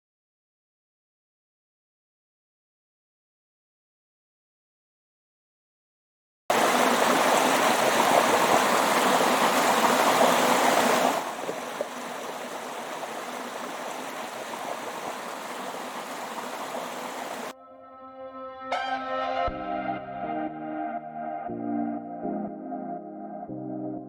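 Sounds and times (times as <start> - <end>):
running water: 6.5 - 17.5
waterfall rushing: 6.5 - 17.5.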